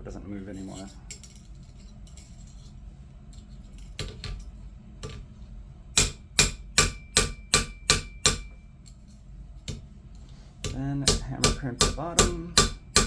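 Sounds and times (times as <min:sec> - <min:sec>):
hammer striking metal: 0:06.0 - 0:08.6, 0:10.6 - 0:13.0.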